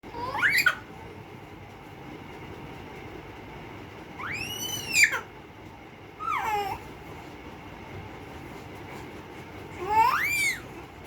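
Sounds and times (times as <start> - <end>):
ceiling fan whirring: 0.0 - 11.0
baby squealing: 0.2 - 0.9, 4.2 - 5.3, 9.8 - 10.7.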